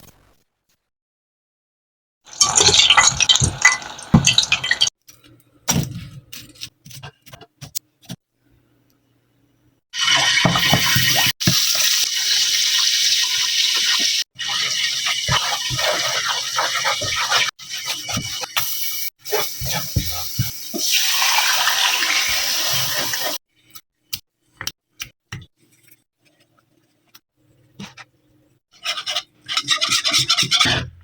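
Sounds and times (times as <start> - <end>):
food sizzling in hot oil: 2.3 - 4.9, 10.0 - 23.4.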